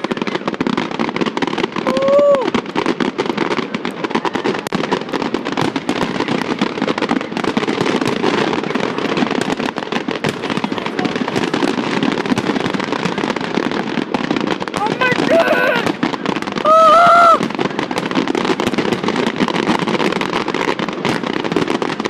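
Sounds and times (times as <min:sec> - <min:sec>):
fireworks crackling and banging: 0:00.0 - 0:22.0
short cry: 0:01.8 - 0:02.5, 0:14.9 - 0:16.0, 0:16.6 - 0:17.4.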